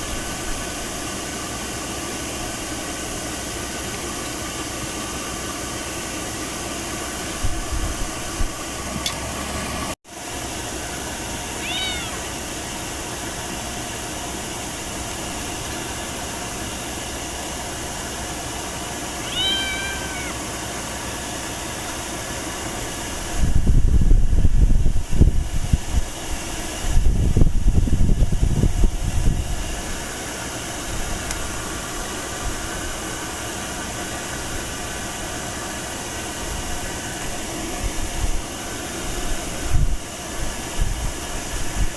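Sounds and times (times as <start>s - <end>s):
steady rushing hiss: 0.0s - 41.9s
cat meowing: 11.6s - 12.3s, 19.2s - 20.4s.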